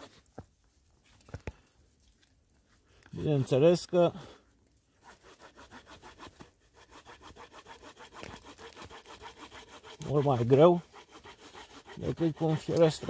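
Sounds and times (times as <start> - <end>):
small saw cutting wood: 5.0 - 13.0.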